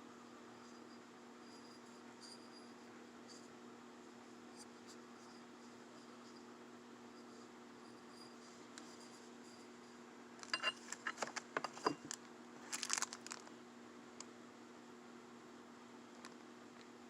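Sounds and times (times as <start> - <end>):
steady low hum: 0.0 - 17.0
metal parts clinking: 10.4 - 13.4
bag crinkling: 12.0 - 13.5.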